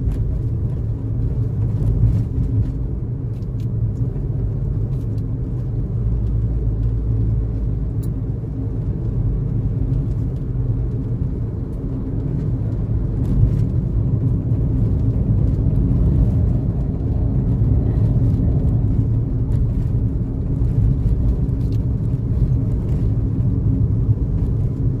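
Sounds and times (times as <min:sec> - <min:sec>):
road and engine rumble: 0:00.0 - 0:25.0.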